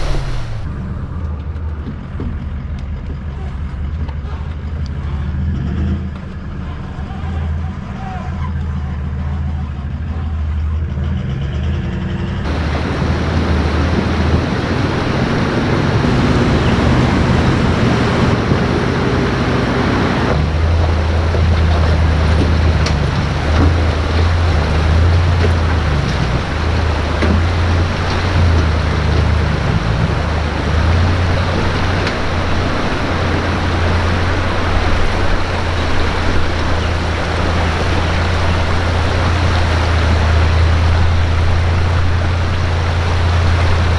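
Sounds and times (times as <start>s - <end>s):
road noise: 0.0s - 0.7s, 12.4s - 43.9s
vehicle engine drone: 0.0s - 43.9s.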